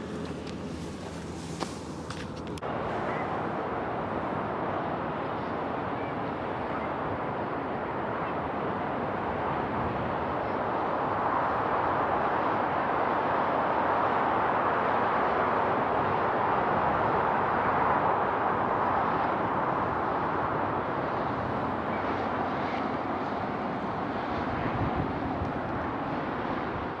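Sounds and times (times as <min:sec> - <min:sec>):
car engine running: 0:00.0 - 0:02.6.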